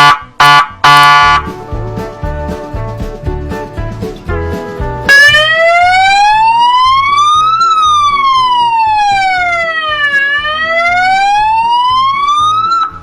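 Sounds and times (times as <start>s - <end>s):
electronic siren wailing: 0.0s - 1.5s, 5.1s - 13.0s.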